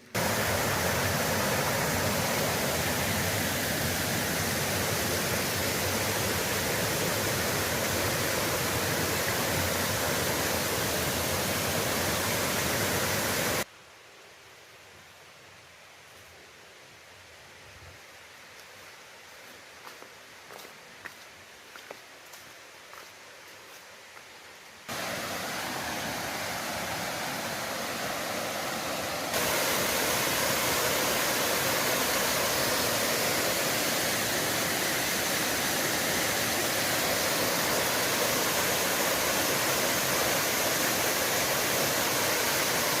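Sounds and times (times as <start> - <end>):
waterfall rushing: 0.0 - 13.7, 24.9 - 43.0.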